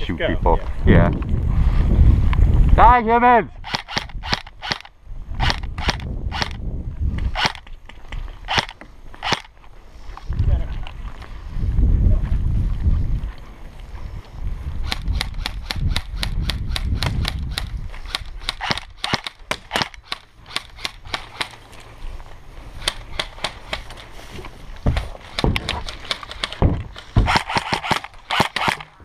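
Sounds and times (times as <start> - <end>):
airsoft guns firing: 14.9 - 21.6, 25.3 - 29.0.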